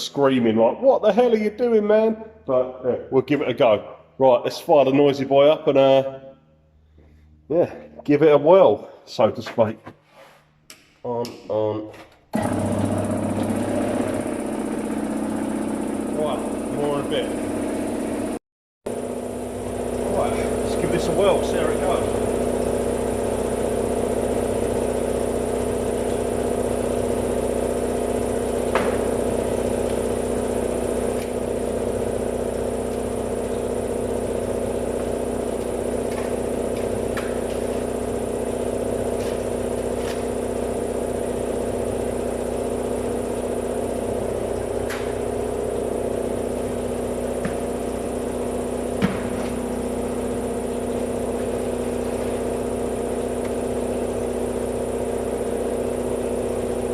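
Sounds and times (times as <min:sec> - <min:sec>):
air compressor motor humming: 0:12.4 - 0:56.9.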